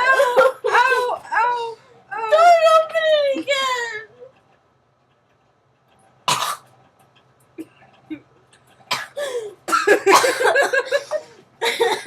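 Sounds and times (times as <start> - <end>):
person coughing: 8.9 - 12.0.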